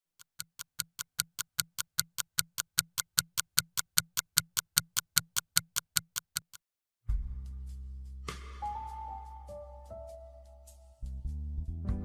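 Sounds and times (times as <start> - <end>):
rapid clock ticking: 0.0 - 6.6.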